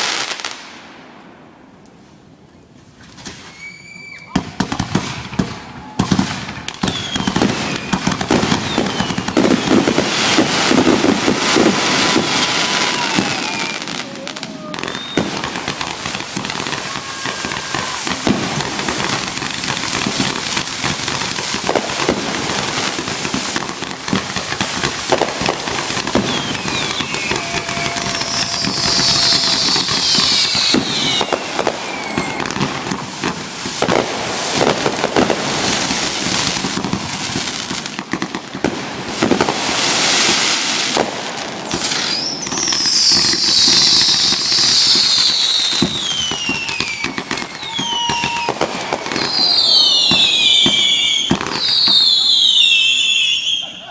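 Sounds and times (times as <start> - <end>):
firework bangs: 0.0 - 1.8, 2.9 - 53.9
firework crackling: 0.0 - 1.8, 2.8 - 53.9
falling whistling tones: 3.4 - 4.5, 6.8 - 10.5, 12.5 - 15.4, 26.2 - 32.6, 41.8 - 53.9.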